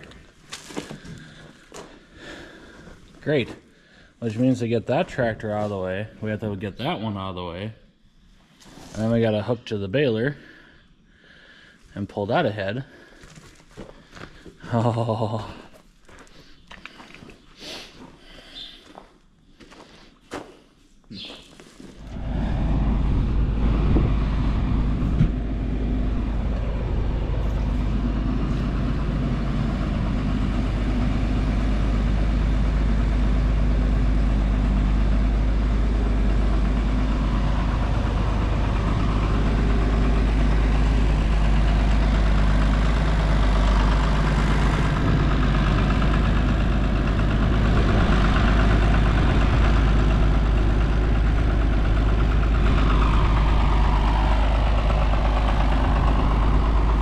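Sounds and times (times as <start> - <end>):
tractor engine running: 0.0 - 7.6, 21.2 - 57.0.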